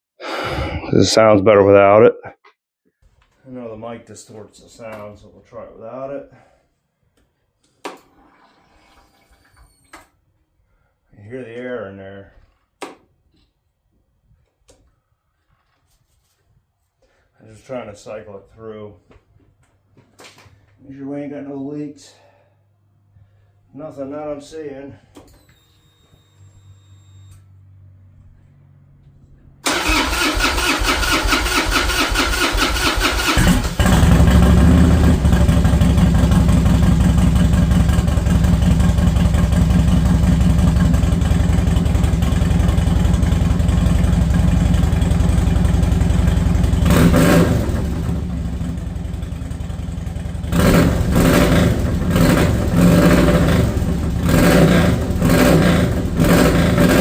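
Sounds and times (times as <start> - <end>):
starter motor cranking: 29.6 - 34.3
motorcycle engine running: 33.7 - 57.0.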